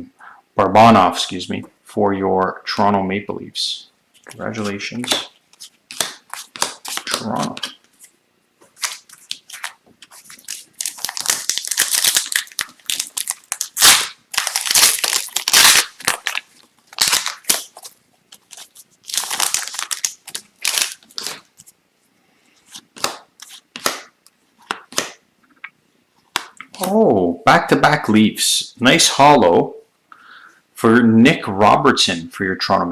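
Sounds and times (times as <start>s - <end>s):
cards clicking and snapping: 4.6s - 7.8s, 23.0s - 25.2s, 26.3s - 27.0s
foil wrappers crinkling: 8.7s - 21.7s.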